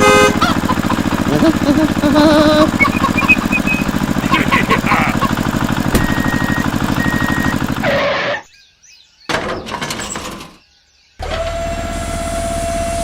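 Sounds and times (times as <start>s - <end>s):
small engine running: 0.0s - 8.4s, 11.2s - 13.0s
clattering crash: 5.9s - 6.6s.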